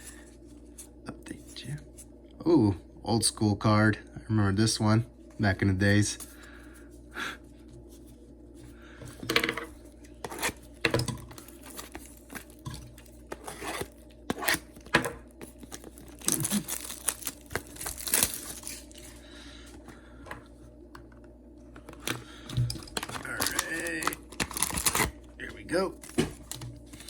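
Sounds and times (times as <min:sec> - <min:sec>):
foil wrapper crinkling and tearing: 0:11.4 - 0:19.2, 0:21.9 - 0:27.0.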